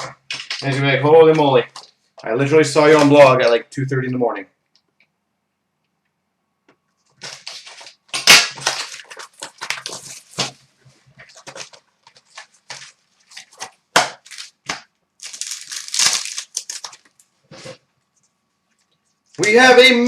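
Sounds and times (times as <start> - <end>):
plastic wrappers crackling: 7.2 - 10.6, 11.2 - 17.8.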